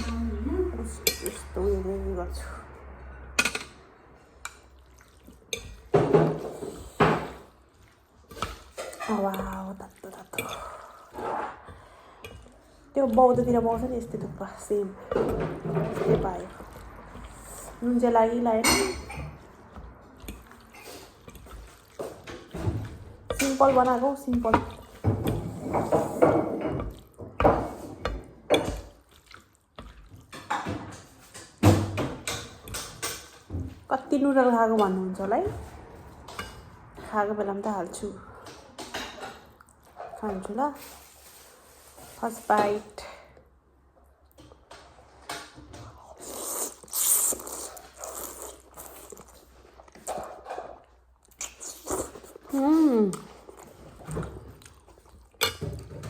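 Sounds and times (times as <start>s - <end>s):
person chewing: 4.5s - 5.9s, 19.4s - 23.0s, 28.7s - 30.4s, 46.0s - 55.5s
person slurping noodle soup: 46.0s - 49.5s.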